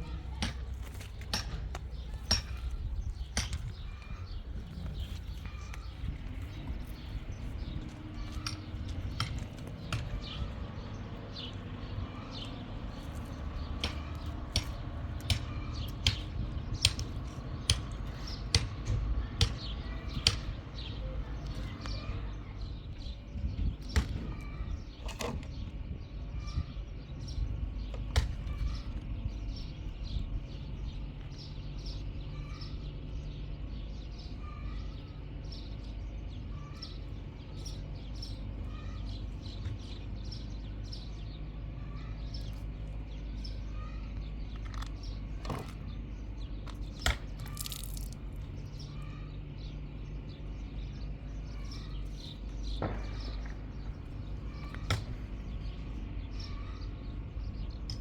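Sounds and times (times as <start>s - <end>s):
steady low rumble: 0.0s - 21.4s
small birds chirping: 0.0s - 58.0s.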